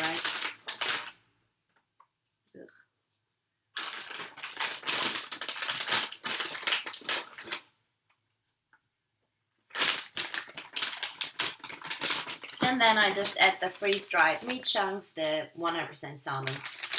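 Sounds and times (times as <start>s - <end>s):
dry dog treats crunching: 0.0s - 1.2s, 3.8s - 7.6s, 9.7s - 14.7s, 16.4s - 16.9s.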